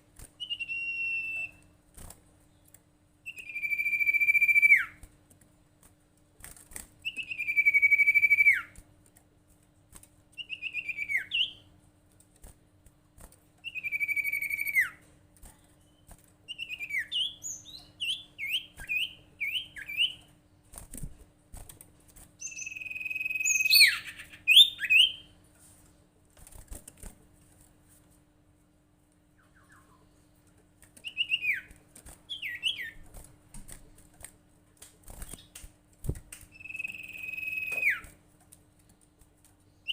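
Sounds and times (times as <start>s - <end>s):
faint steady hum: 0.0s - 39.9s
songbird drawn-out whistles: 36.6s - 38.1s.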